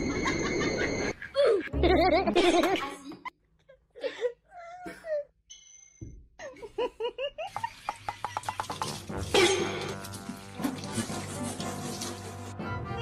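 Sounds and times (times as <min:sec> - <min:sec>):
person laughing: 0:00.1 - 0:03.2, 0:06.4 - 0:09.6.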